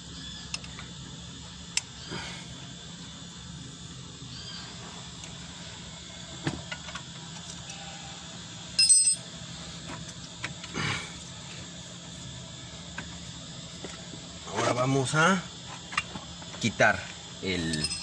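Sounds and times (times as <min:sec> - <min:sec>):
metal tools clinking: 0:08.8 - 0:09.2, 0:17.6 - 0:18.0.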